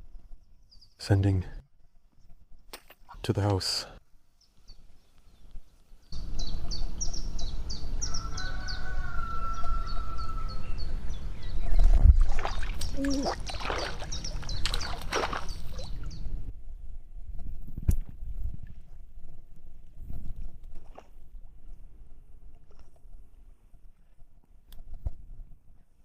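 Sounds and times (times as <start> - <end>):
wind rumble on microphone: 5.4 - 26.0
small bird chirping: 9.5 - 16.4.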